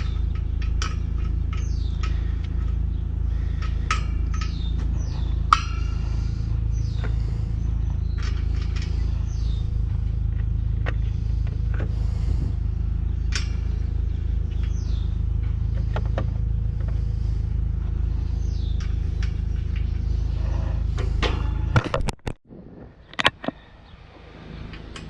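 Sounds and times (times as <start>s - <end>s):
hand tools clinking: 0.0s - 12.4s
birds chirping: 0.0s - 22.1s, 22.9s - 25.0s
low rumble: 0.0s - 24.9s.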